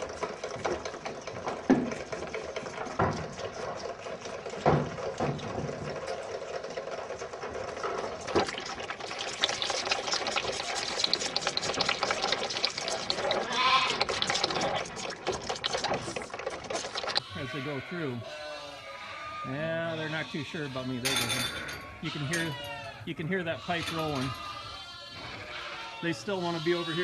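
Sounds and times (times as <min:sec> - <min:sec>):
barn clatter: 0:00.0 - 0:27.0
calves bawling: 0:00.0 - 0:27.0.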